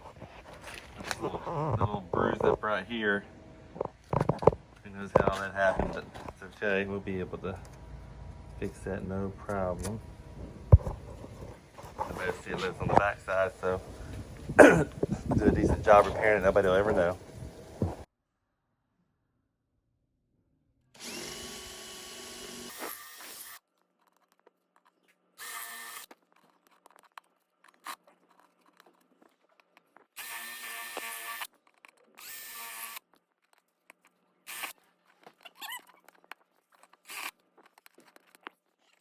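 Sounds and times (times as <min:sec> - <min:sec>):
electric power tool whining: 0:21.0 - 0:23.6, 0:30.2 - 0:31.5, 0:32.2 - 0:33.0.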